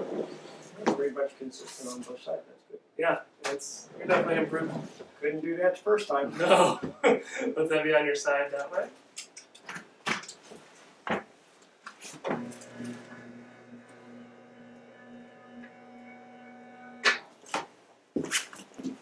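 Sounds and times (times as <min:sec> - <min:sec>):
small electric motor humming: 0:12.4 - 0:17.0.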